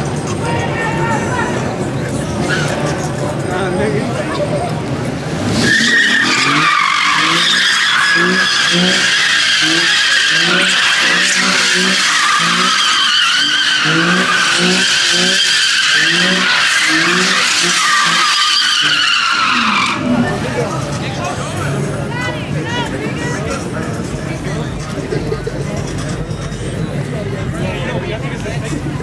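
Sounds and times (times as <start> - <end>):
tires squealing: 0.0 - 29.0
pulsing engine: 1.6 - 22.1.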